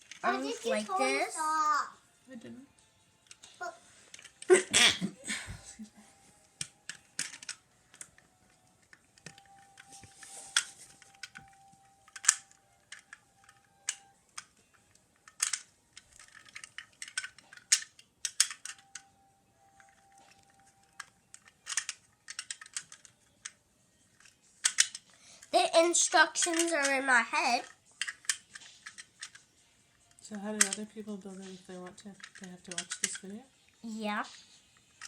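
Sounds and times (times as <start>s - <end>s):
plastic bricks clicking and clattering: 4.1s - 4.6s, 6.6s - 19.1s, 19.8s - 29.5s, 30.1s - 33.4s.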